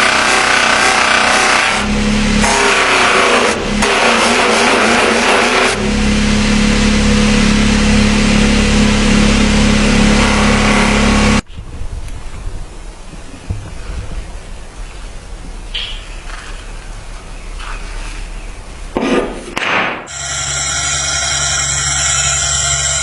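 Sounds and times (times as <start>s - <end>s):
grinding steel blade: 0.0s - 5.9s, 20.1s - 23.0s
power tool motor hum: 0.0s - 11.4s, 20.1s - 23.0s.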